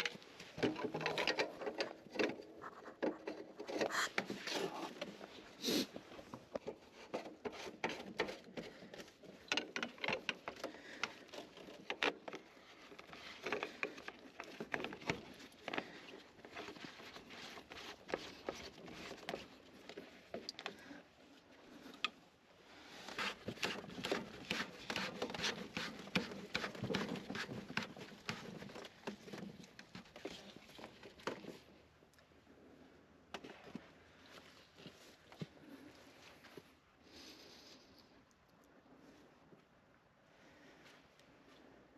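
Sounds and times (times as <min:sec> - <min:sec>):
small parts clicking and rustling: 0:00.0 - 0:04.3.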